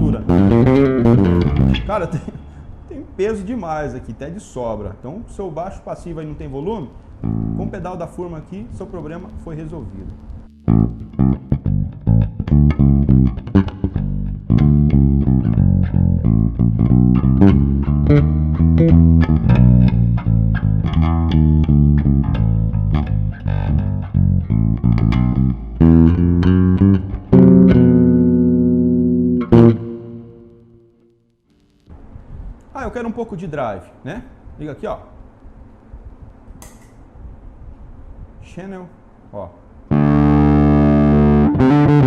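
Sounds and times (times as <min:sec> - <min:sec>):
electric bass plucked notes: 0:00.0 - 0:03.0, 0:07.2 - 0:31.8, 0:39.9 - 0:42.0.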